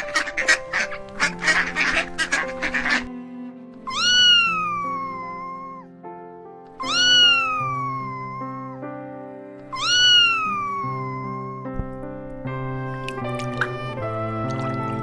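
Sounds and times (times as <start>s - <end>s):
background music: 0.0s - 15.0s
cat meowing: 3.9s - 5.9s, 6.8s - 8.8s, 9.7s - 11.7s.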